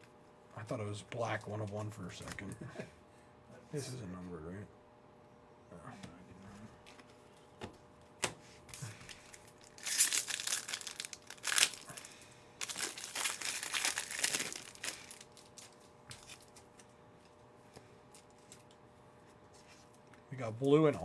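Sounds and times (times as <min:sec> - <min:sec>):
foil wrapper crinkling: 0:08.7 - 0:16.9.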